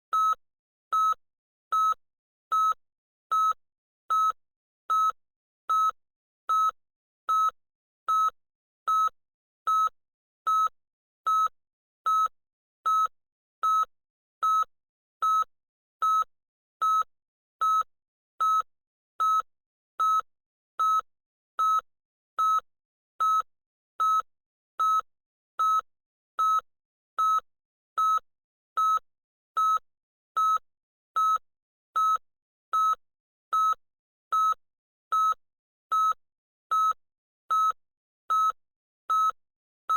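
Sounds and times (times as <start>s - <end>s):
short high-pitched beeps: 32.8s - 39.4s.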